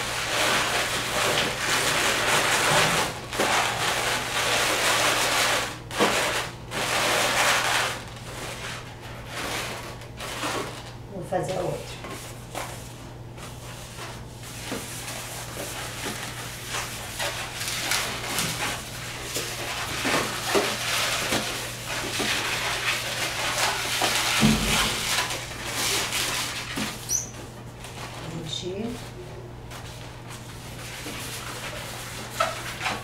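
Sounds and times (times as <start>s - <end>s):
balloons squeaking and creaking: 27.0s - 27.4s.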